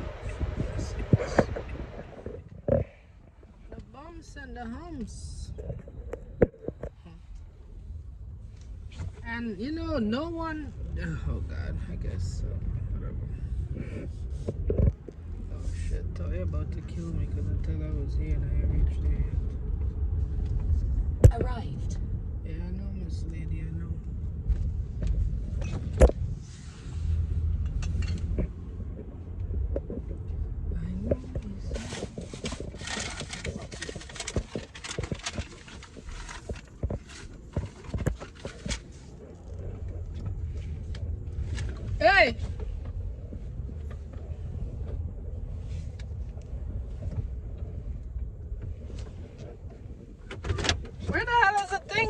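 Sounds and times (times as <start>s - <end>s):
car rumble from inside cabin: 0.0s - 52.0s
clicks and creaks: 5.5s - 7.5s, 31.0s - 45.2s.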